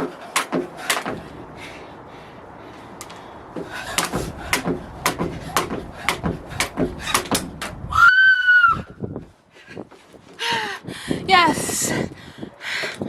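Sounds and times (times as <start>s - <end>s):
jump rope slapping the floor: 0.0s - 1.2s, 3.9s - 7.8s.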